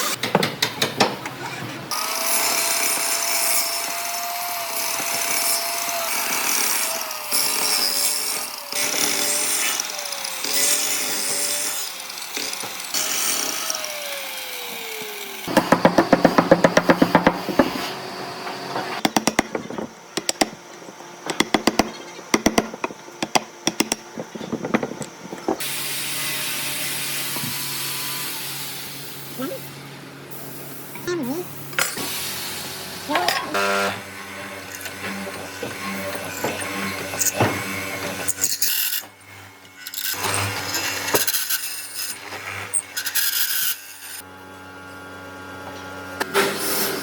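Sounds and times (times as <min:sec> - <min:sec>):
power tool cutting wood: 0:01.9 - 0:19.1, 0:24.5 - 0:29.9, 0:31.7 - 0:47.0
sharp knocks on wood: 0:15.5 - 0:17.8.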